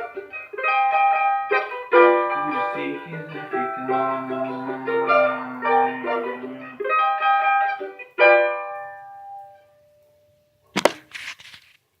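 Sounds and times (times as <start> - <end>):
acoustic guitar strumming: 0.0 - 9.2
short rustle: 10.8 - 11.9.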